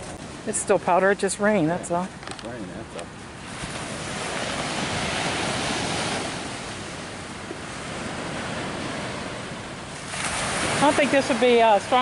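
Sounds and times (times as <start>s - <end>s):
surf washing up a beach: 2.8s - 12.0s.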